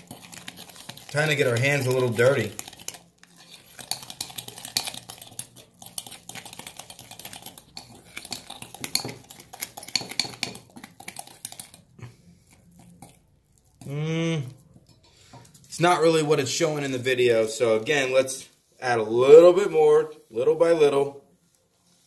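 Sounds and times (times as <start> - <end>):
hands kneading gritty mix: 0.0 - 14.6.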